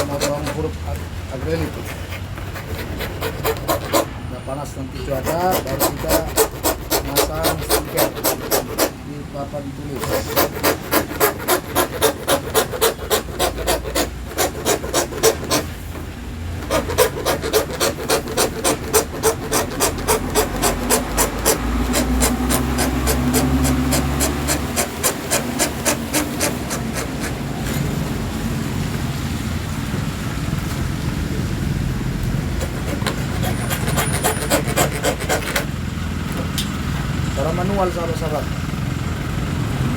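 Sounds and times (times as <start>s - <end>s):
hand saw cutting acrylic sheet: 0.0s - 4.2s, 4.9s - 9.0s, 9.9s - 15.8s, 16.6s - 28.2s, 32.4s - 35.8s.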